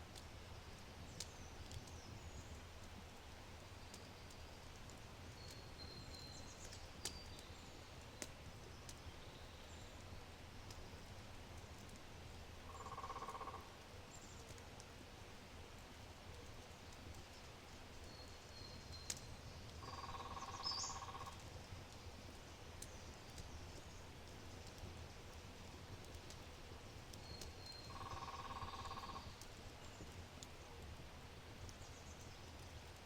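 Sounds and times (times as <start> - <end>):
fire crackling and popping: 0.0 - 33.0
small birds chirping: 16.3 - 30.7.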